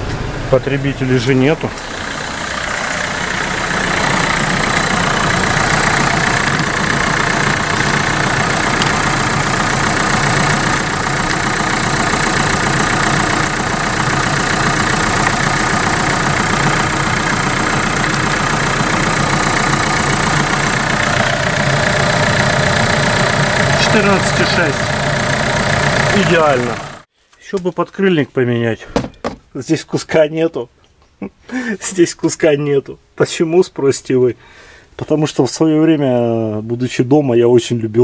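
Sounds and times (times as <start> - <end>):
car engine idling: 0.0 - 27.1.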